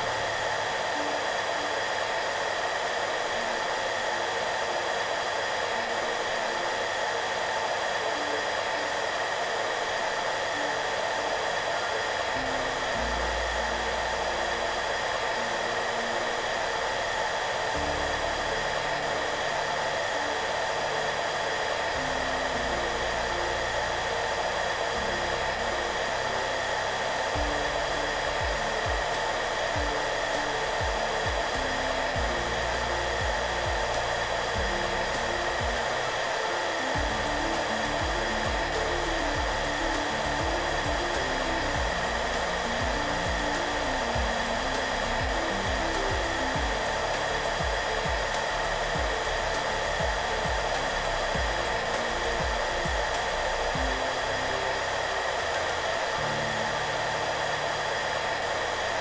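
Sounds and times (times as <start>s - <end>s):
hair dryer running: 0.0s - 59.0s
soft background music: 0.0s - 59.0s.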